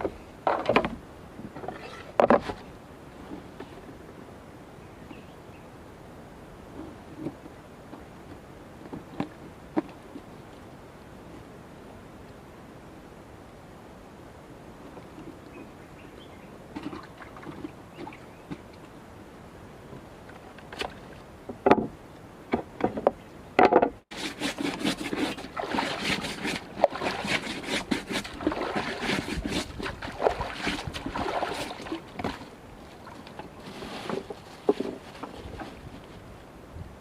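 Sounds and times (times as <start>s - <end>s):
water splashing around boat: 16.7s - 19.0s, 24.1s - 36.1s.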